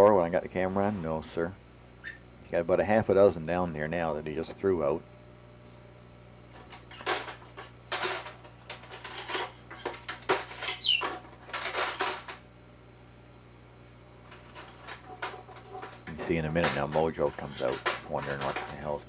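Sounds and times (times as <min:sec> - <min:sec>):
parrot squeak: 0:10.7 - 0:11.1.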